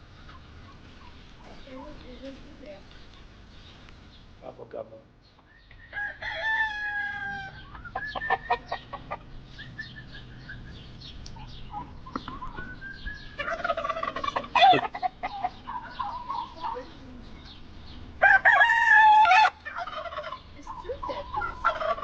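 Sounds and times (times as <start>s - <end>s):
chickens clucking: 0.0s - 4.1s, 5.4s - 22.0s
rooster crowing: 5.6s - 8.8s, 13.4s - 16.4s, 18.2s - 20.3s.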